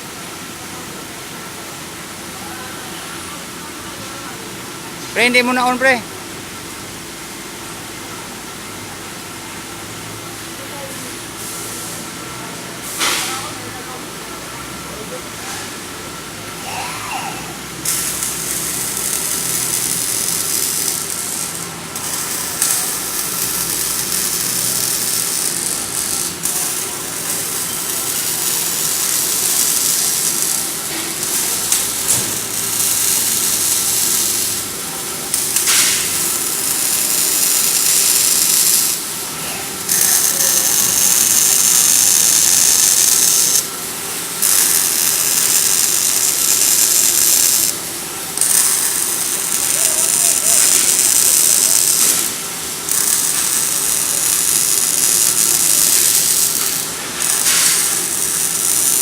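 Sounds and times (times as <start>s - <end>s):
welding arc hissing: 5.2s - 6.0s, 14.6s - 59.0s
steady machine hum: 13.4s - 59.0s.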